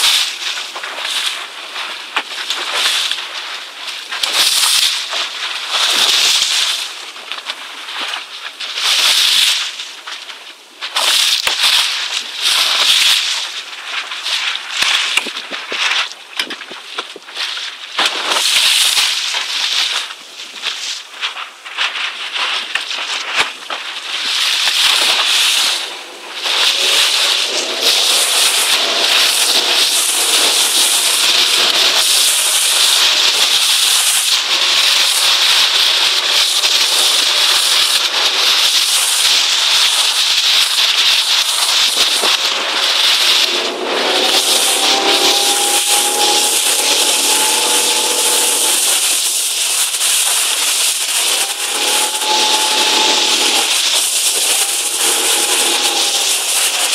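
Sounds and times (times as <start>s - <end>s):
rushing water and spray: 0.0s - 21.2s, 22.6s - 56.9s
wind buffeting microphone: 24.2s - 37.6s, 41.3s - 56.9s
faint humming tone: 43.5s - 49.5s, 51.2s - 56.9s.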